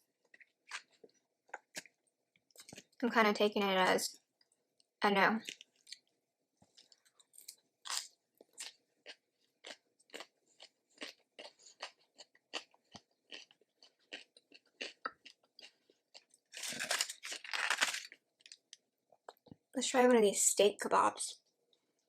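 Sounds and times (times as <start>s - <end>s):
chewing crisp food: 0.2s - 3.0s, 4.4s - 19.6s.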